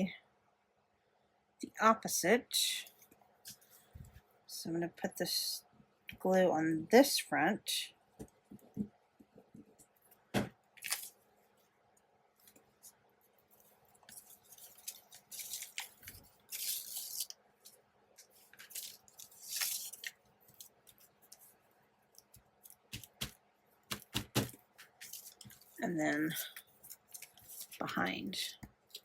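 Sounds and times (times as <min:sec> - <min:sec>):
paper rustling: 0:12.4 - 0:21.6, 0:22.2 - 0:28.0.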